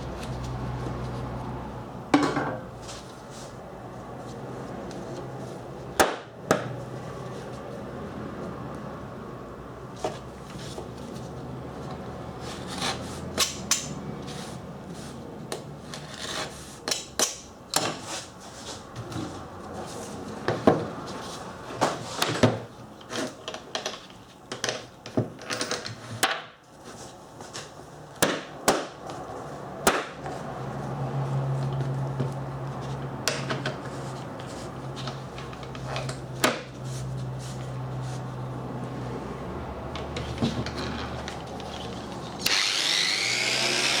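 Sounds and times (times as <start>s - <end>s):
tools clattering on workbench: 2.2s - 2.6s, 24.6s - 26.4s.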